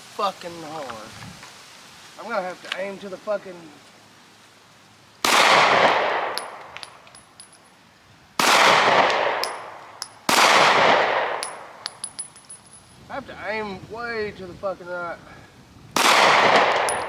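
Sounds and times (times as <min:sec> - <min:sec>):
brass casings tinkling: 0:06.3 - 0:07.8, 0:09.4 - 0:10.4, 0:11.3 - 0:13.1, 0:16.7 - 0:17.0
pistol shots echoing: 0:16.0 - 0:17.0.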